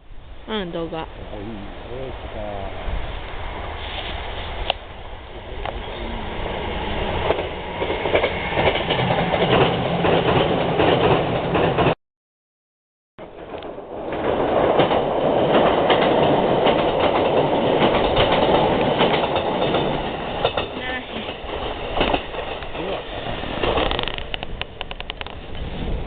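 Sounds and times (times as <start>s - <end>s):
train wheels clacking over rails: 5.6s - 12.0s, 13.2s - 25.7s.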